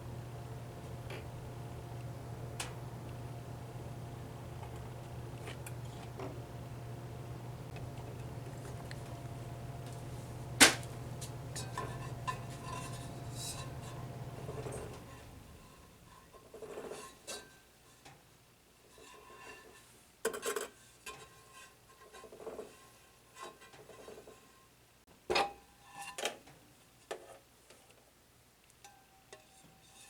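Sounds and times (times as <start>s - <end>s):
turntable humming: 0.0s - 16.1s.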